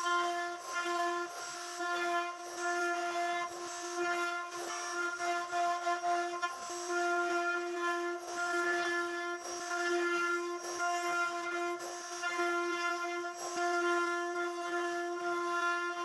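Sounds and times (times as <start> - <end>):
router spindle whining cutting wood: 0.0 - 16.0.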